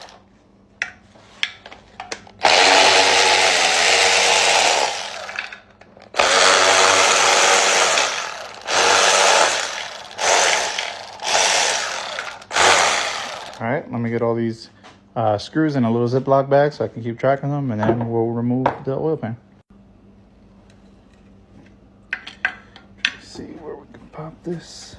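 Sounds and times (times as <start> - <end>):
power tool spinning screws out: 2.4 - 13.6.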